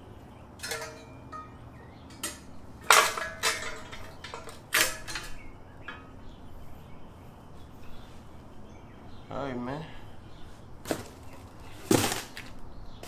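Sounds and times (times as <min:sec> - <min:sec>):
metal parts clinking and clanking: 0:00.6 - 0:06.2.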